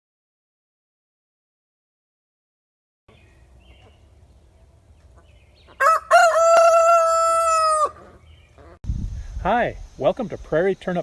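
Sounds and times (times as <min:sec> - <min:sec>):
distant bird chirps: 0:03.1 - 0:08.8
rooster crowing: 0:05.7 - 0:08.2.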